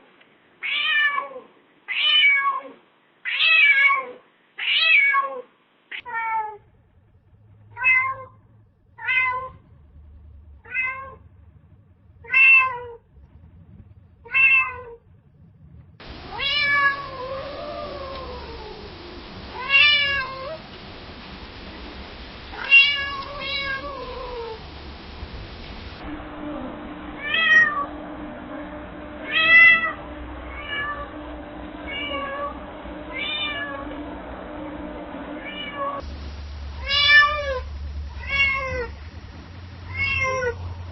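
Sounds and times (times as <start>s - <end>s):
cat meowing: 10.6s - 11.2s, 12.2s - 13.0s, 14.3s - 15.0s, 16.0s - 20.6s, 22.5s - 24.7s, 29.2s - 31.1s, 31.9s - 33.9s, 35.4s - 36.0s, 36.8s - 39.0s, 39.9s - 40.6s
background hiss: 16.0s - 40.9s.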